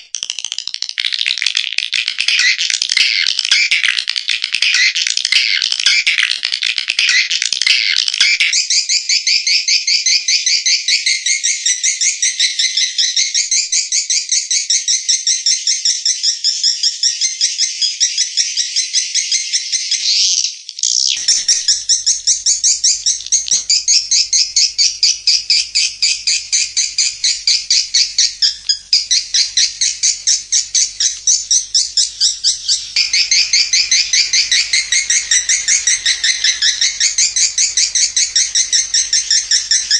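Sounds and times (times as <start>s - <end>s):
swiftlets chirping: 0.0s - 8.7s, 21.1s - 39.9s.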